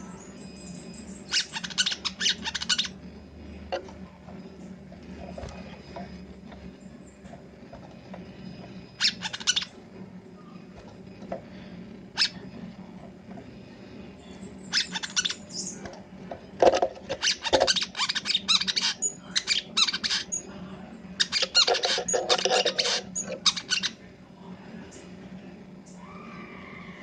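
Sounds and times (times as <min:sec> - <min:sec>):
bird chattering song: 0:00.0 - 0:03.1, 0:08.4 - 0:09.7, 0:12.2 - 0:12.4, 0:14.2 - 0:15.8, 0:17.1 - 0:20.5, 0:21.2 - 0:24.0
low steady hum: 0:00.0 - 0:27.0.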